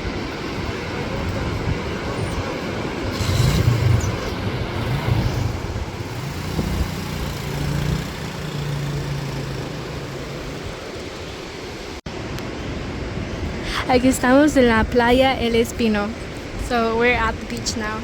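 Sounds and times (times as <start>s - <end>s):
vehicle engine hum: 0.0s - 12.2s
steady rushing noise: 0.0s - 18.0s.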